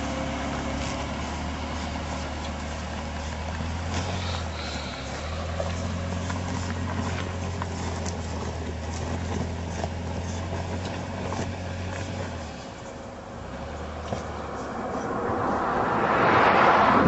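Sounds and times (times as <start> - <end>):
vehicle engine humming: 0.0 - 17.0
rushing noise: 14.5 - 17.0.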